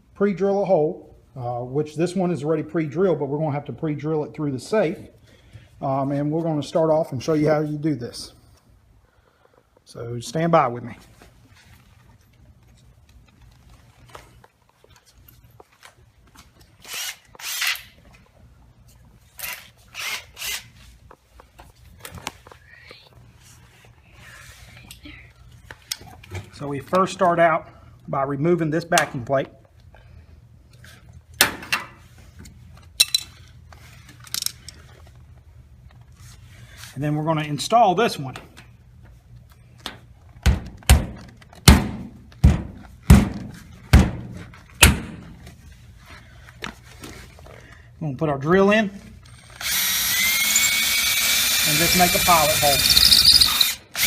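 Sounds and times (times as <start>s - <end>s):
power drill running: 49.3s - 54.0s.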